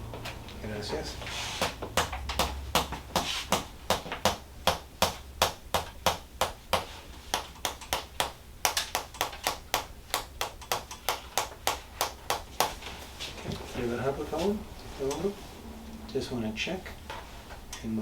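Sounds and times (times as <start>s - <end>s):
rapid percussive taps on body: 1.6s - 12.8s.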